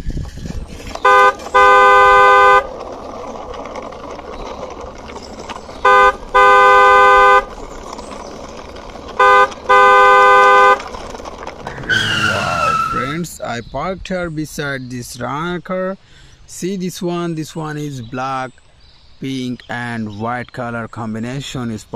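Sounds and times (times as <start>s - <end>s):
car horn honking: 1.0s - 2.7s, 5.8s - 7.5s, 9.2s - 10.8s.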